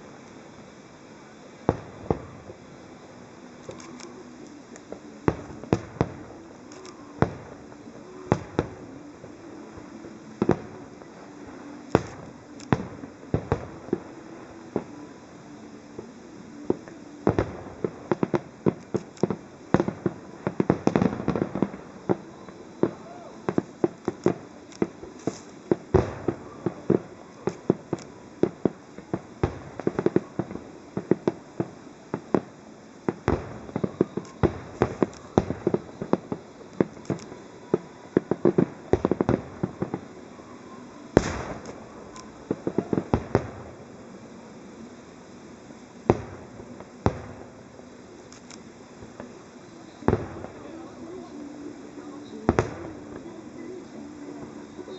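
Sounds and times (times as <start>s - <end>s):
fireworks bursting with bangs: 0.0s - 54.9s.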